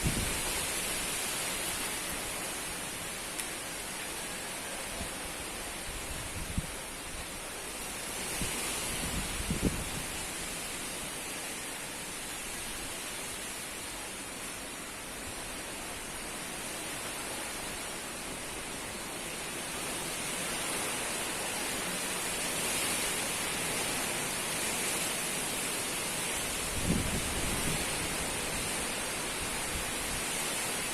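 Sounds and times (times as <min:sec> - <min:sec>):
strong wind gusting: 0:00.0 - 0:00.8, 0:08.3 - 0:10.3, 0:26.6 - 0:28.7.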